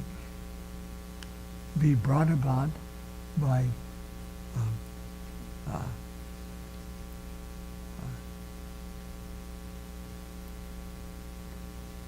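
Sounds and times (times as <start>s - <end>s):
electrical mains hum: 0.0s - 12.0s
faint vocal sound: 4.5s - 6.1s, 7.9s - 8.4s.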